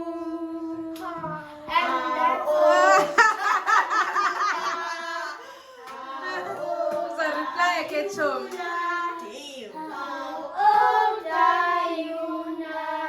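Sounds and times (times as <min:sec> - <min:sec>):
children laughing and cheering: 0:01.7 - 0:08.5
wavering trill of laughter: 0:02.5 - 0:05.8.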